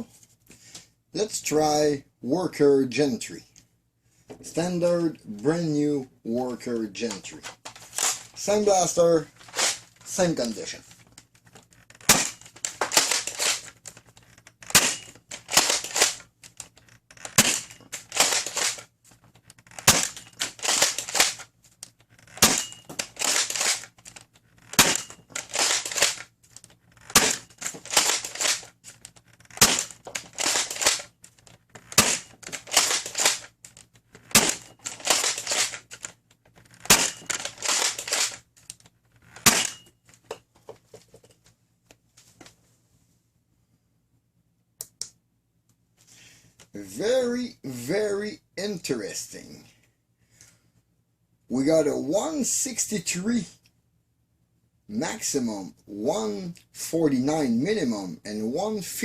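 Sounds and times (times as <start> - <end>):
blaster clattering reloaded: 9.4 - 10.7, 11.8 - 18.9, 19.5 - 21.5, 22.2 - 38.4
foam dart blaster shots: 12.1 - 12.4, 14.7 - 15.9, 17.3 - 17.7, 19.8 - 21.2, 22.4 - 23.6, 24.7 - 26.2, 27.1 - 28.5, 29.5 - 31.0, 31.9 - 33.4, 34.3 - 35.5.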